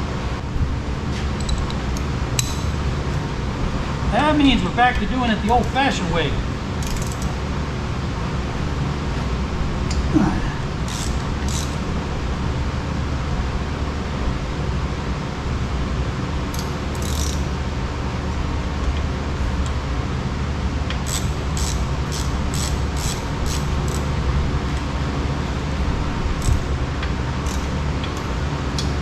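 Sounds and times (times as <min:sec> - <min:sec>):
low mechanical hum: 0:00.0 - 0:29.0
ratchet wrench clicking: 0:01.4 - 0:02.7, 0:06.8 - 0:07.4, 0:10.9 - 0:11.8, 0:16.5 - 0:17.5, 0:21.0 - 0:24.1, 0:26.4 - 0:26.7, 0:27.4 - 0:28.2.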